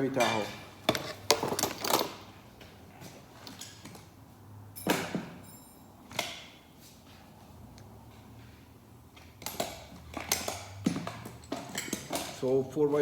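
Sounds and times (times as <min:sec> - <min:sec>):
metal tools clanking: 0:00.1 - 0:02.4
high metallic ring: 0:04.8 - 0:06.1.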